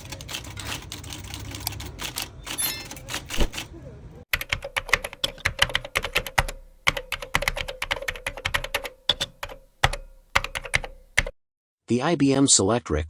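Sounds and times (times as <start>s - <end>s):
electric typewriter typing: 0.0s - 3.7s, 4.3s - 11.3s
typewriter motor hum: 0.0s - 3.7s.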